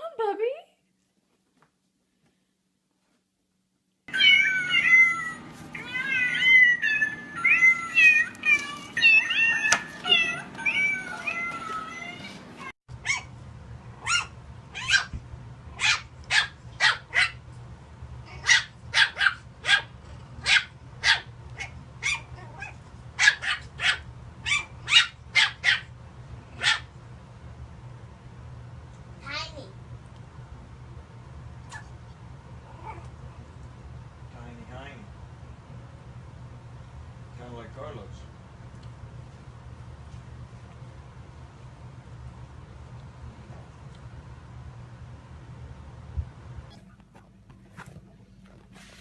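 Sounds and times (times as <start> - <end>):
cat crying sharply: 4.1 - 12.7
cat mewing: 4.1 - 12.7.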